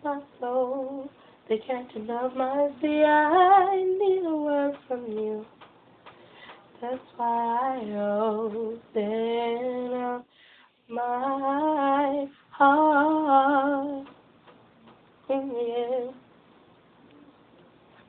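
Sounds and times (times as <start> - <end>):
woman singing unaccompanied: 0.0 - 5.7, 6.7 - 14.3, 15.2 - 16.3.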